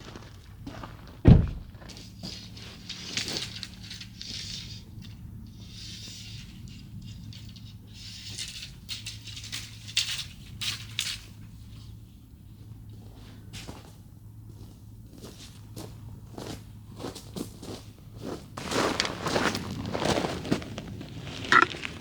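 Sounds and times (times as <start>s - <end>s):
rustling and scraping of handled objects: 0.2s - 22.0s
steady low hum: 0.4s - 2.0s
heavy thump: 1.2s - 1.8s.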